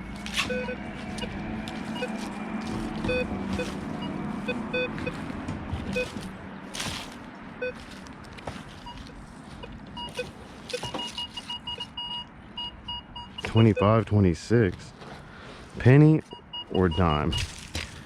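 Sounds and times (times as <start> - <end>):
metal detector beeps: 0.5 - 1.3, 1.9 - 2.2, 3.1 - 5.2, 7.6 - 7.8, 8.8 - 13.9, 16.3 - 17.5.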